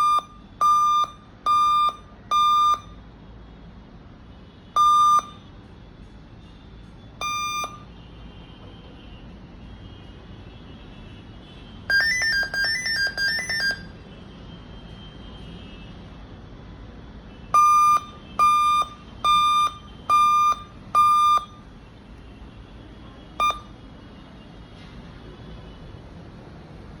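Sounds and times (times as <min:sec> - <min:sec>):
laptop electronic beeps: 0:00.0 - 0:03.0, 0:04.8 - 0:05.4, 0:07.2 - 0:08.0, 0:11.9 - 0:14.0, 0:17.6 - 0:21.8, 0:23.4 - 0:23.8.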